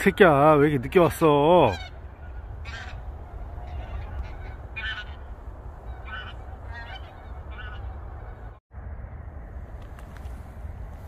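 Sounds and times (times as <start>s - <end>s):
geese honking: 0.0s - 8.6s
steady low rumble: 1.7s - 11.0s.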